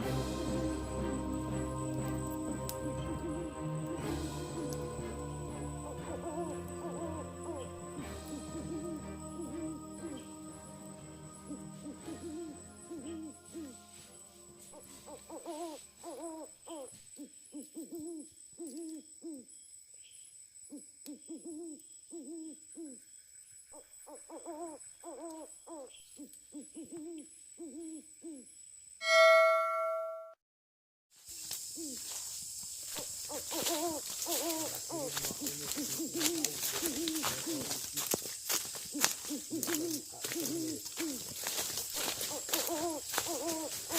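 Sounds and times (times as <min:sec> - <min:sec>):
owl hooting: 0:00.0 - 0:14.1, 0:14.7 - 0:19.4, 0:21.1 - 0:23.0, 0:24.1 - 0:28.4, 0:31.8 - 0:32.0, 0:33.3 - 0:38.2, 0:38.9 - 0:43.9
animal hooting calls: 0:02.8 - 0:10.5, 0:33.3 - 0:38.0, 0:39.0 - 0:43.9
loud ringing chime: 0:29.0 - 0:30.4.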